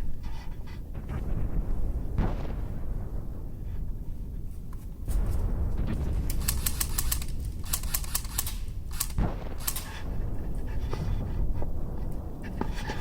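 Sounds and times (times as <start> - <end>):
wind rumble: 0.0 - 13.0
airsoft guns firing: 5.8 - 10.6.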